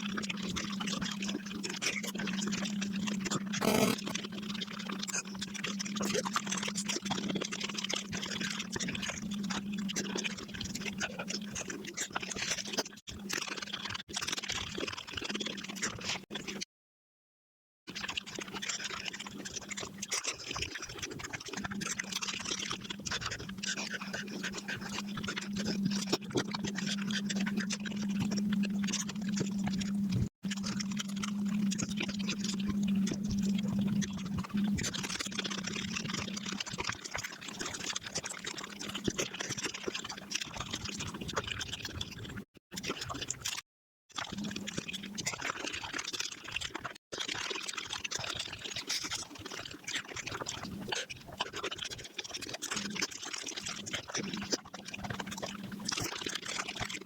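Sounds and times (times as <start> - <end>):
sped-up chewing noises: 0.0 - 16.6, 17.9 - 57.0
steady low hum: 24.8 - 34.9.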